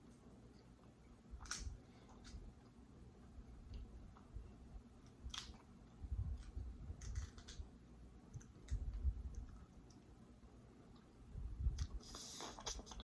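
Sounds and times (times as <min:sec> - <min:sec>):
sharp clicks and crackles: 0:01.4 - 0:02.4, 0:05.0 - 0:05.7, 0:06.3 - 0:07.7, 0:08.3 - 0:10.1.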